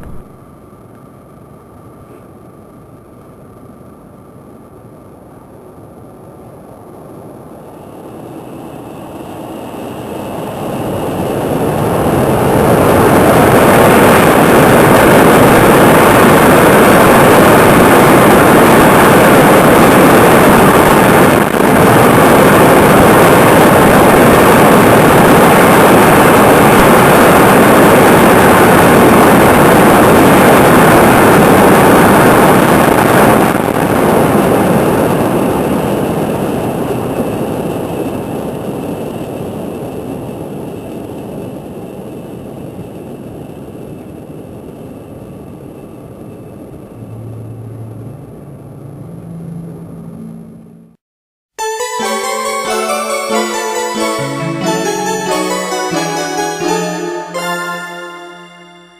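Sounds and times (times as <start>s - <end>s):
train rushing past: 51.6s - 58.9s.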